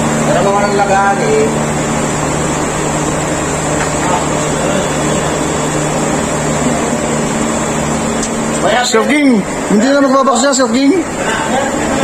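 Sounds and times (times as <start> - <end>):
low machine hum: 0.0 - 12.0.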